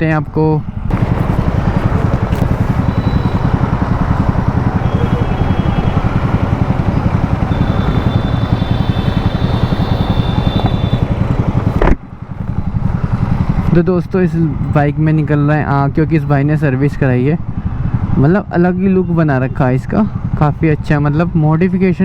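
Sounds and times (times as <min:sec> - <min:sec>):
motorcycle engine idling: 0:00.9 - 0:13.4.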